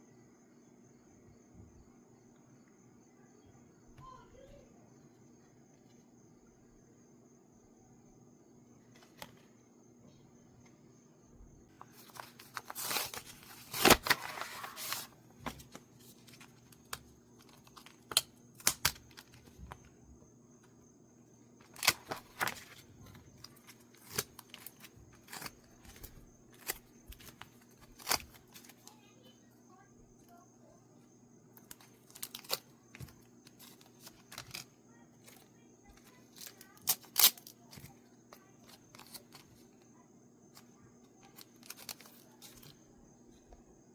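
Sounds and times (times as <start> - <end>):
package tearing open: 11.8 - 19.4, 21.7 - 28.8, 31.6 - 34.6, 36.0 - 39.4, 41.2 - 42.7
wrapping crinkling: 11.8 - 19.7, 21.6 - 29.0, 31.6 - 39.7, 41.2 - 42.8.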